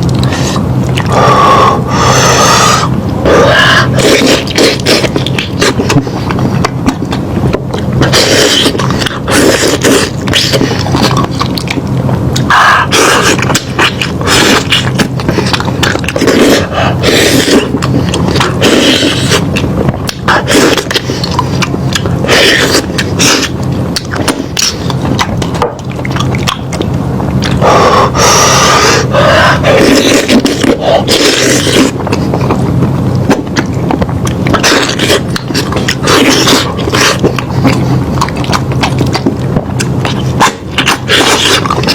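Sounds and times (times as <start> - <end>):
person chewing meat: 0.0 - 41.9.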